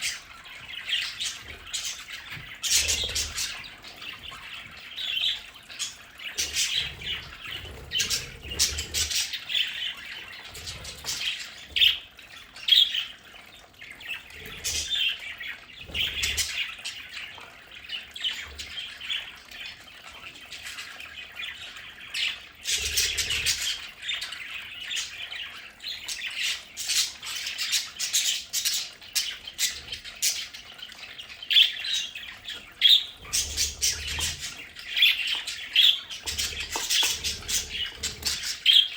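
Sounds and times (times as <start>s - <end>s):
budgerigars chattering and squawking: 0.0s - 38.9s.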